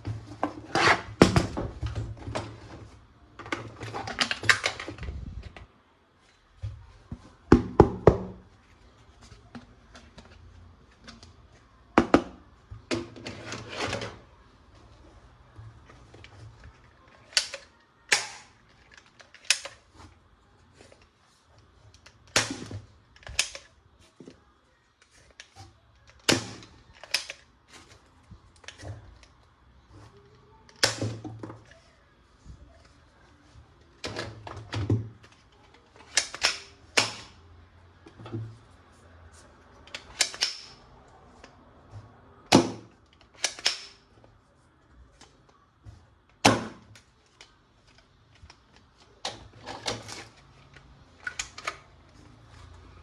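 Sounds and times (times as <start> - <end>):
plastic toy gun clicks: 17.3 - 19.8, 23.2 - 23.7, 26.1 - 27.4, 36.0 - 37.4, 40.0 - 40.8, 43.2 - 44.0.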